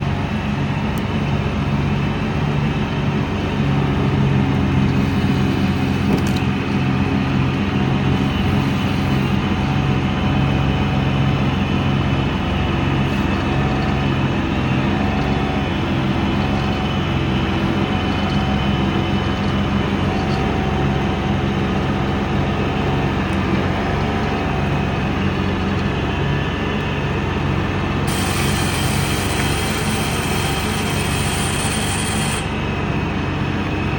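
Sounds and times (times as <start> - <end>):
diesel engine running: 0.0 - 33.9
faint high whine: 24.8 - 33.9.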